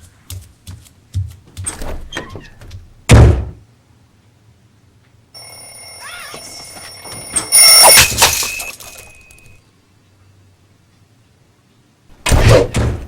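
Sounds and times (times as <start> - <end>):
alarm clock ringing: 5.4 - 9.6.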